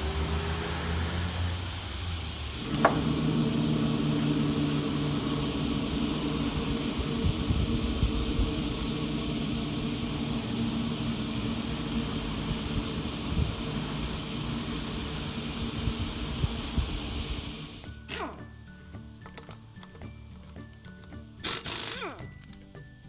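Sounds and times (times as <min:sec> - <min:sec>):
road rumble: 0:00.0 - 0:17.9
droning hum: 0:00.0 - 0:18.3.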